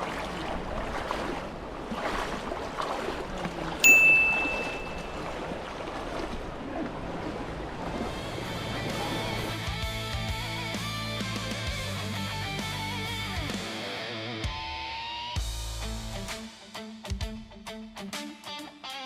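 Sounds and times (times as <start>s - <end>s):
river water rushing: 0.0s - 10.0s
sharp high ping: 3.8s - 5.1s.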